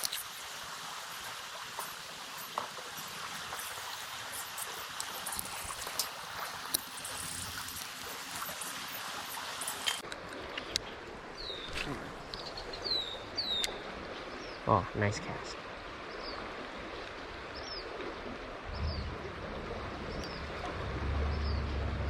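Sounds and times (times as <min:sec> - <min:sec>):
small ticks and splashes: 0:00.0 - 0:14.6
river water flowing: 0:00.0 - 0:22.0.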